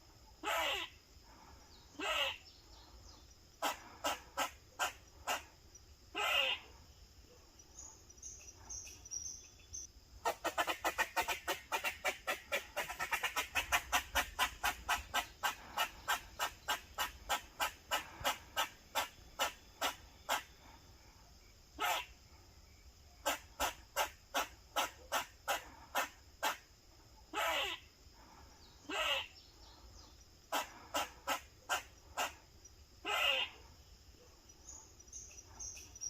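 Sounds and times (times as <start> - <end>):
squirrel alarm barking: 0.4 - 0.9, 2.0 - 2.4, 3.6 - 5.5, 6.1 - 6.8, 21.8 - 22.1, 27.3 - 27.8, 28.9 - 29.3, 30.5 - 32.4, 33.0 - 33.7.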